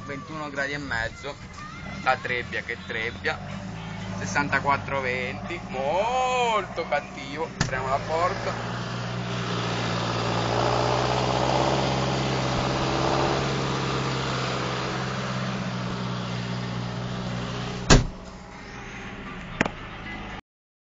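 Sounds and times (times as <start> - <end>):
combine harvester engine running: 1.4 - 20.1
cab door slamming: 7.6 - 7.8, 17.8 - 18.3.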